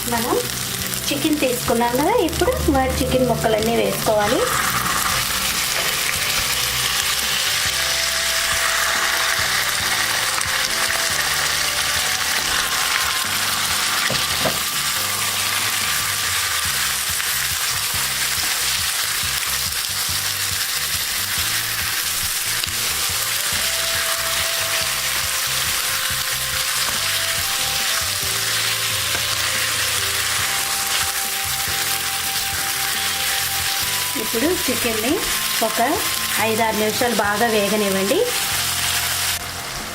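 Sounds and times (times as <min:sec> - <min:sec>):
chicken sizzling in hot oil: 0:00.0 - 0:39.9.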